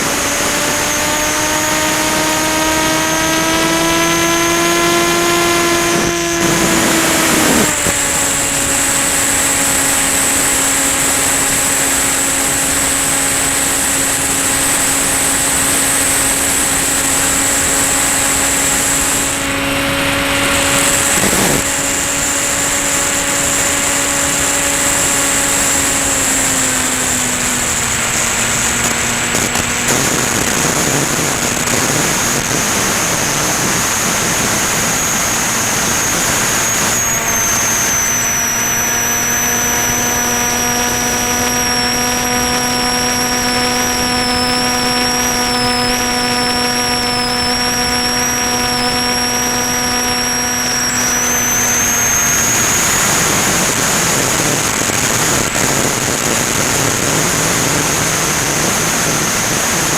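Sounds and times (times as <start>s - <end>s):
model plane motor whining: 0.0s - 59.9s.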